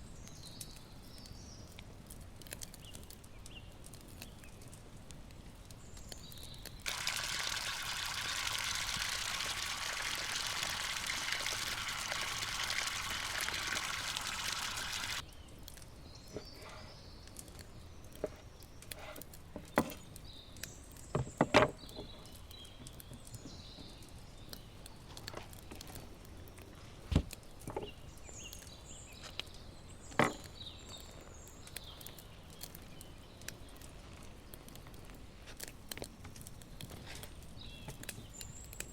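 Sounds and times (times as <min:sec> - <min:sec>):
water pouring: 0:06.8 - 0:15.2.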